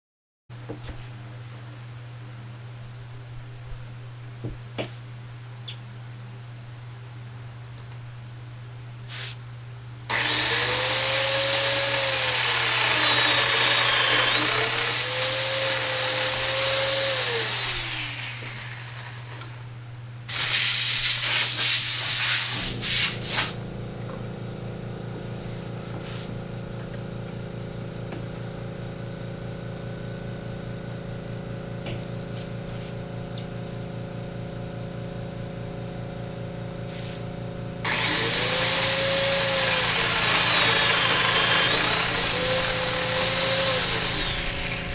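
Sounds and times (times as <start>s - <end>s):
power tool motor whine: 10.1s - 19.7s, 37.8s - 44.9s.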